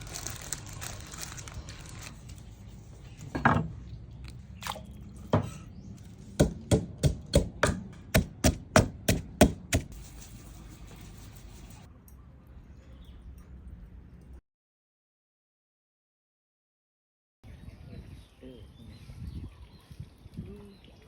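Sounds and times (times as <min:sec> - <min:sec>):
knife chopping on cutting board: 0:06.4 - 0:09.9.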